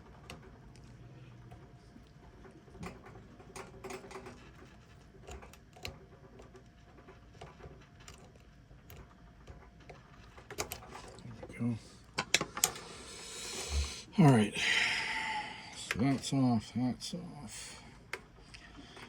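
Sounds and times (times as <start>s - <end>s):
small clicks and taps: 0.0s - 11.3s, 12.1s - 12.8s.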